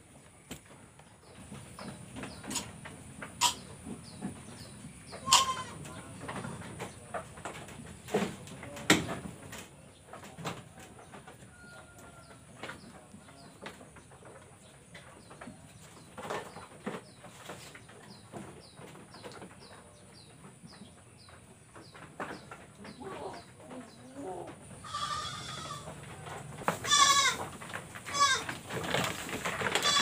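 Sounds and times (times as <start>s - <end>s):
birds calling: 0.5s - 7.0s, 24.7s - 26.0s, 26.8s - 30.0s.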